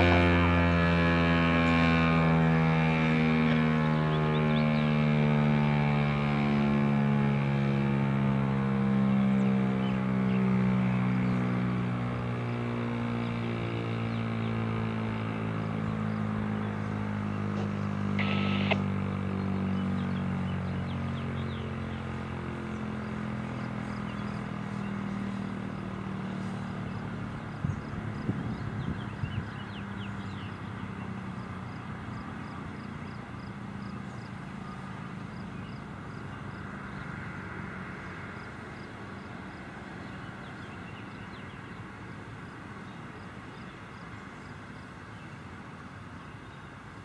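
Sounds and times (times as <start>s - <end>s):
warning siren winding down: 0.0s - 8.0s, 18.1s - 19.1s.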